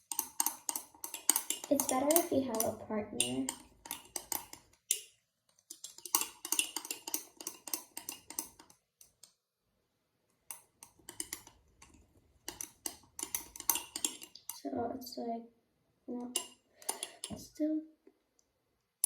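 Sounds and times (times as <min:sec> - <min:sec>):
utensil stirring slime in cup: 0:00.0 - 0:09.3, 0:10.4 - 0:14.7, 0:16.2 - 0:17.5.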